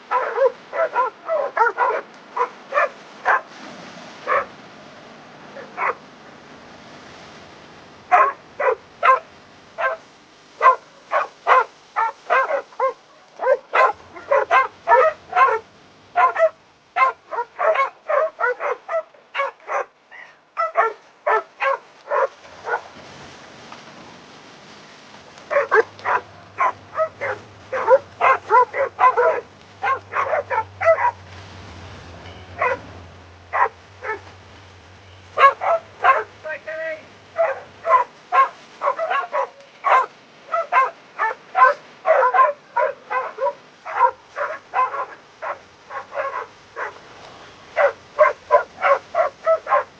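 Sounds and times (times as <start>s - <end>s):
dog barking and yipping: 0.0s - 3.5s, 4.2s - 4.5s, 5.6s - 6.0s, 8.1s - 10.0s, 10.6s - 22.9s, 25.5s - 31.3s, 32.6s - 32.9s, 33.5s - 34.4s, 35.4s - 36.4s, 37.4s - 47.0s, 47.7s - 49.9s.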